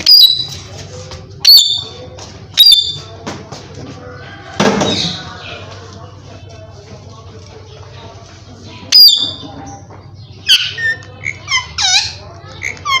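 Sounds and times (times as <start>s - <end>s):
parakeet squawks: 10.4s - 13.0s.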